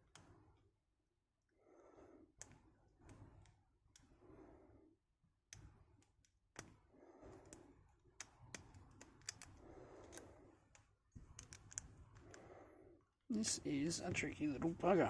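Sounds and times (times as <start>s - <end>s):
soft breathing: 1.5s - 5.8s, 6.8s - 8.0s, 9.2s - 14.6s
lock picks clicking in padlock: 8.2s - 10.3s, 11.3s - 11.9s.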